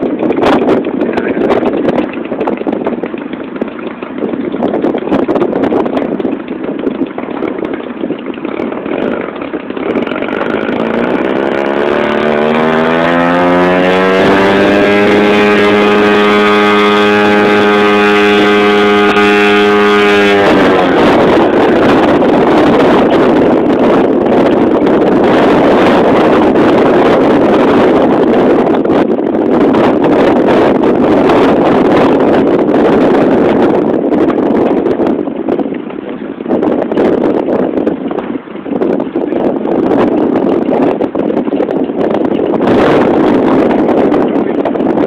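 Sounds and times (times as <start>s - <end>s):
wind buffeting microphone: 0.0s - 45.0s
model airplane engine revving: 0.1s - 33.8s.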